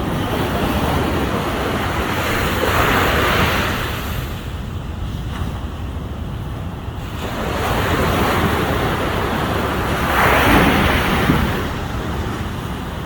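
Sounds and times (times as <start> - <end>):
ocean waves breaking: 0.0 - 13.0
wind on the microphone: 0.0 - 13.0.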